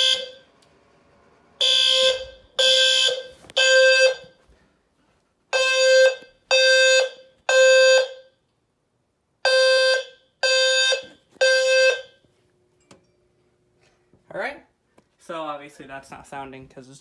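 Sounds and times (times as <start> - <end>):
fire alarm horn blasts: 0.0 - 0.6, 1.6 - 4.5, 5.5 - 8.5, 9.4 - 12.3.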